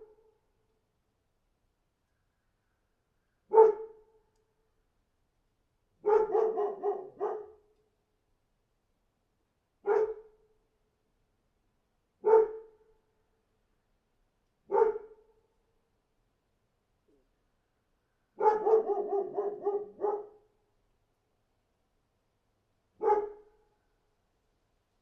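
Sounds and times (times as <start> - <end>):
dog barking: 3.5 - 4.0, 6.0 - 7.6, 9.8 - 10.4, 12.2 - 12.8, 14.7 - 15.2, 18.4 - 20.4, 23.0 - 23.5.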